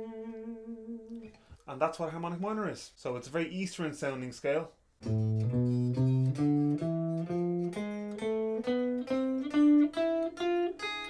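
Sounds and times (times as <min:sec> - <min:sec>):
guitar picking scale notes: 0:00.0 - 0:01.3, 0:05.0 - 0:11.0.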